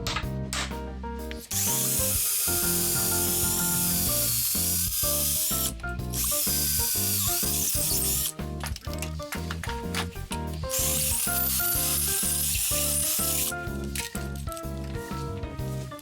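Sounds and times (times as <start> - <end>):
background music: 0.0 - 16.0
power tool hissing: 1.5 - 8.3, 10.7 - 13.6.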